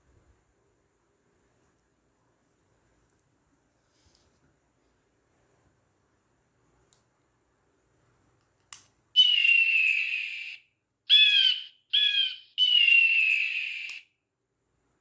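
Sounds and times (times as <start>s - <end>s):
click: 6.9s - 7.1s
high calls through small speaker: 9.2s - 14.0s.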